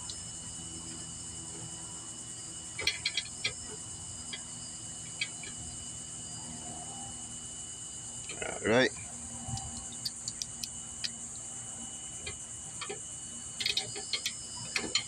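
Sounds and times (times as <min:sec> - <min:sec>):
crickets chirping: 0:00.0 - 0:15.0
sharp clicks: 0:09.5 - 0:11.1.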